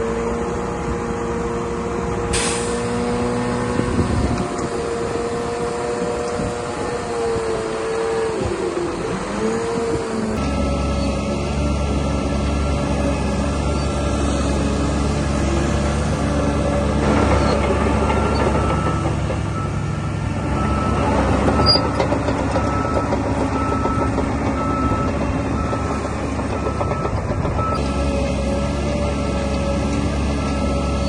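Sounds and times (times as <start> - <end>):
bulldozer diesel engine running: 0.0 - 31.0
reversing alarm beeps: 22.6 - 27.8, 30.4 - 31.0.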